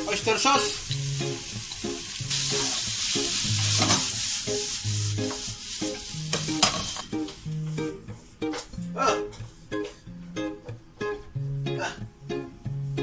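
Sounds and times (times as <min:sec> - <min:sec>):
vegetables sizzling in oil: 0:00.0 - 0:08.0
spatula scraping and clattering: 0:01.7 - 0:09.6.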